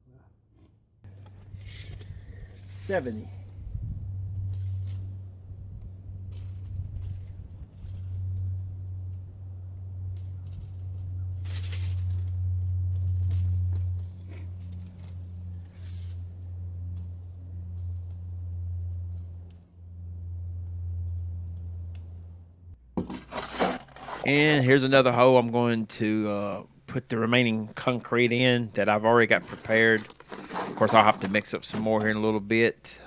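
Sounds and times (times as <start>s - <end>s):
steady low hum: 1.0s - 33.0s
gritty rattles and clinks: 29.3s - 32.4s.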